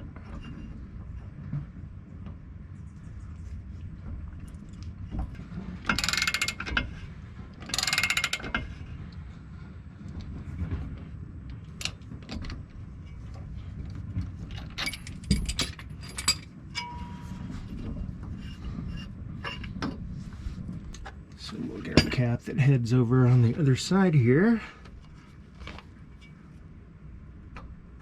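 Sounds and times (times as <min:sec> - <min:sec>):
sharp metal clicks and knocks: 0:05.8 - 0:07.0, 0:07.6 - 0:08.8.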